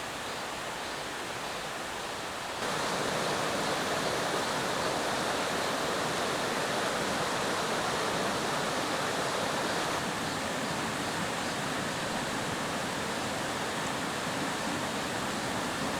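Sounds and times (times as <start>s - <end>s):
water rushing over rocks: 2.6s - 10.4s.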